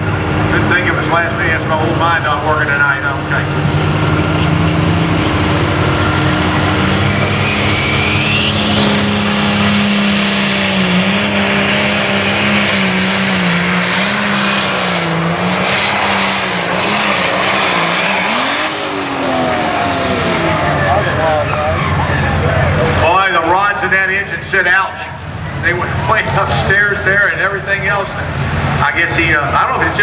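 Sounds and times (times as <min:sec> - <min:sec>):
tractor diesel engine at full load: 0:00.0 - 0:30.0
turbo whine: 0:02.5 - 0:23.1.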